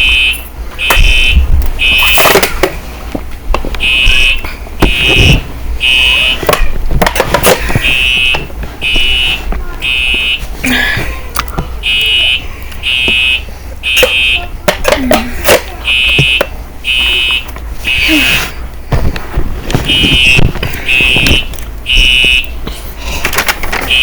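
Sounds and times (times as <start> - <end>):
fire alarm horn buzzing: 0.0 - 2.4, 3.8 - 6.6, 7.7 - 10.4, 11.8 - 14.6, 15.8 - 18.1, 19.9 - 22.6.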